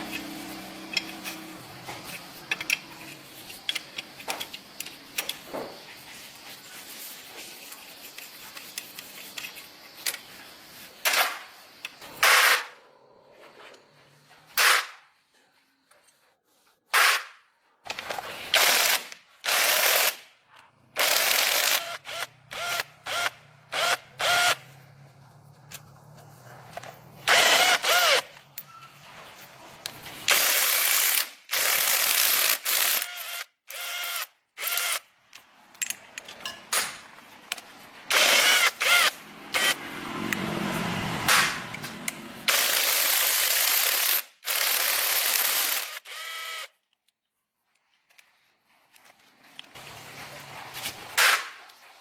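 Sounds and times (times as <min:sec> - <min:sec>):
tool clicking and rasping: 0:00.0 - 0:05.8, 0:07.0 - 0:10.3, 0:17.9 - 0:20.2, 0:21.0 - 0:24.6, 0:26.7 - 0:28.7, 0:29.8 - 0:36.6, 0:37.5 - 0:40.4, 0:41.7 - 0:48.3.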